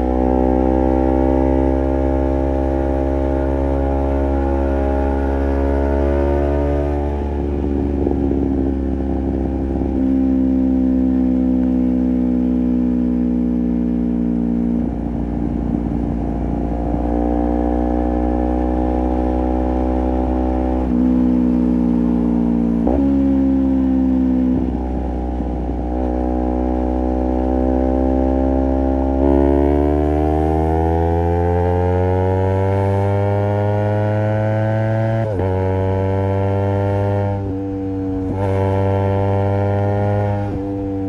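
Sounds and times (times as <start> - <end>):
motorcycle engine shifting gears: 0.0 - 41.0.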